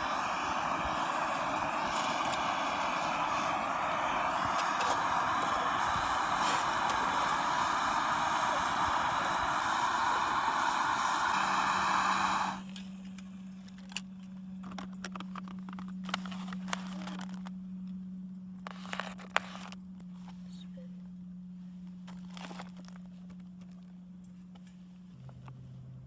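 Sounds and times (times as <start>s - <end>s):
motor running loudly: 0.0s - 12.9s
steady low hum: 0.0s - 22.1s.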